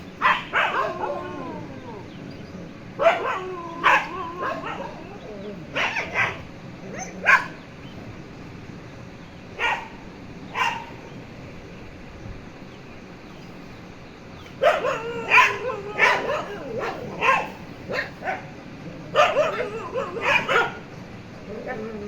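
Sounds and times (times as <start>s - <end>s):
dog barking and yelping: 0.0s - 2.3s, 2.9s - 7.6s, 9.6s - 11.1s, 14.4s - 22.0s.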